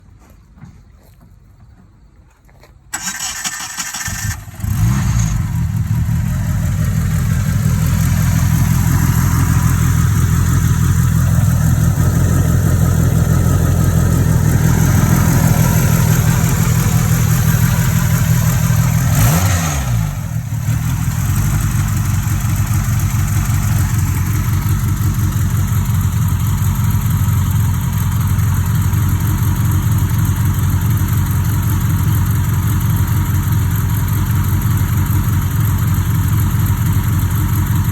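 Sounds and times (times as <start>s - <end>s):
car engine cranking and idling: 2.8s - 37.9s.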